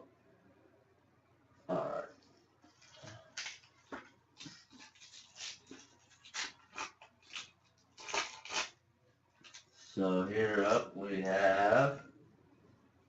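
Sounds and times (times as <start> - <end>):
card wrapper crinkling: 2.8 - 8.8, 9.4 - 9.9.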